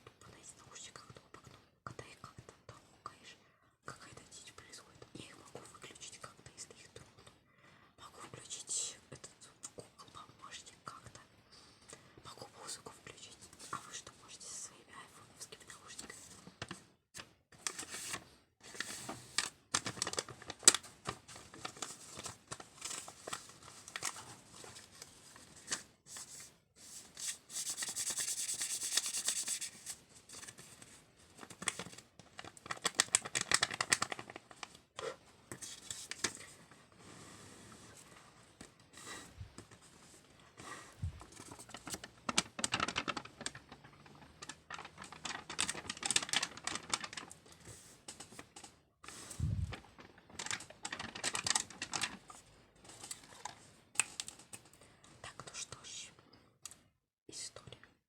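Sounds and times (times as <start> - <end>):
paper banknote crinkling: 27.1 - 30.6, 41.2 - 48.4, 49.4 - 52.4.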